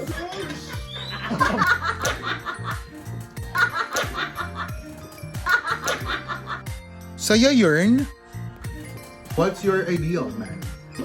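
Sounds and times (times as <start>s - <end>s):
people laughing: 0.0s - 6.7s
background music: 0.0s - 11.0s.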